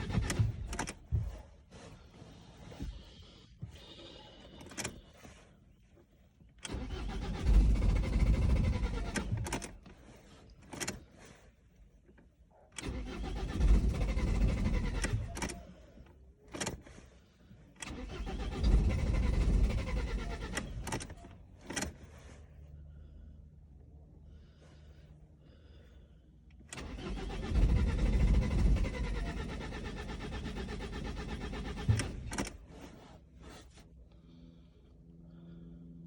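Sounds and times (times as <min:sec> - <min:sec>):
starter cranking engine: 0:00.0 - 0:05.4, 0:06.5 - 0:11.3, 0:12.8 - 0:17.1, 0:17.7 - 0:22.1, 0:26.6 - 0:33.0.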